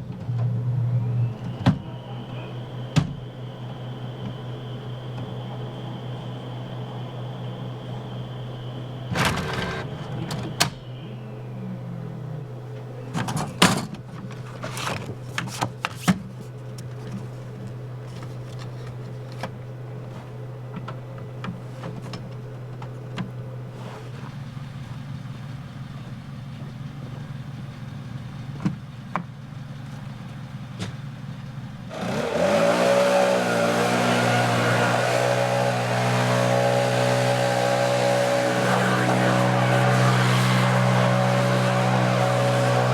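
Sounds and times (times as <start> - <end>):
motor engine starting: 0.0 - 25.4, 31.7 - 42.9
low steady hum: 0.0 - 27.5.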